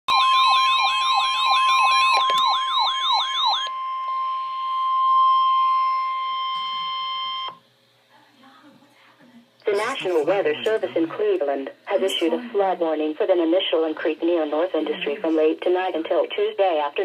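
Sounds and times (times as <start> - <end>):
falling siren-like sweep: 0.1 - 7.2
steady high alarm tone: 0.1 - 7.6.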